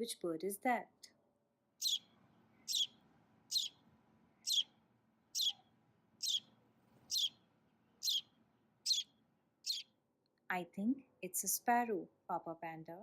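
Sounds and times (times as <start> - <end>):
sparrow chirping: 1.8 - 3.8, 4.4 - 7.4, 8.0 - 10.0.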